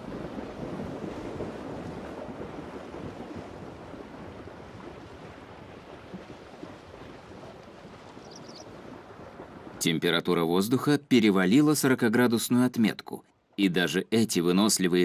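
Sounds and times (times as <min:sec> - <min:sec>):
wind blowing: 0:00.0 - 0:11.2.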